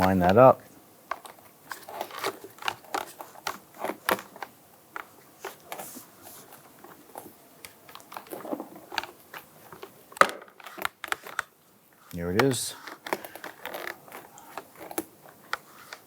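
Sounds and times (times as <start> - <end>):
plastic clicks and rattles: 7.6 - 11.5.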